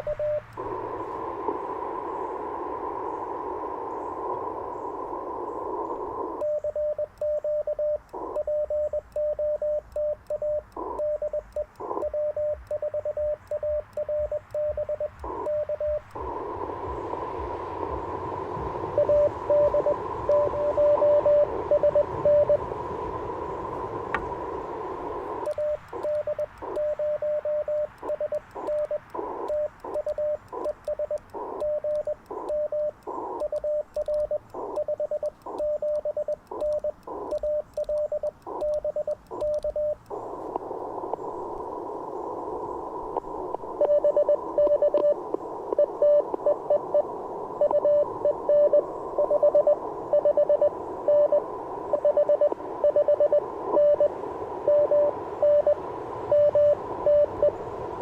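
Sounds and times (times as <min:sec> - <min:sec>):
morse code sidetone: 0:00.0 - 0:01.2, 0:05.2 - 0:17.0, 0:18.9 - 0:22.7, 0:25.3 - 0:40.2, 0:43.7 - 0:57.6
receiver hiss: 0:00.0 - 0:58.0
incoming morse code: 0:06.2 - 0:16.4, 0:18.9 - 0:22.7, 0:25.2 - 0:40.1, 0:43.8 - 0:57.6.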